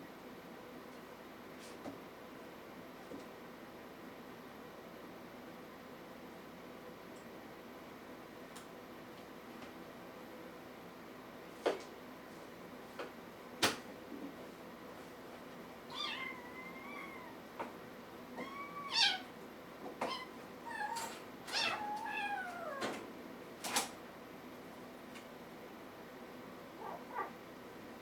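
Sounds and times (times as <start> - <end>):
kitten meowing: 15.9 - 17.4, 18.4 - 19.3, 20.0 - 22.8, 26.8 - 27.4.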